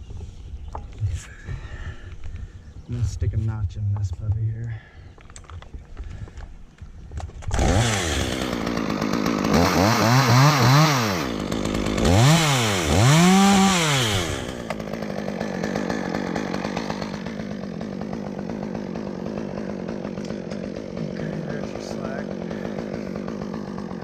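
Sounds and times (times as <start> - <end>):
chainsaw cutting wood: 5.2 - 24.0.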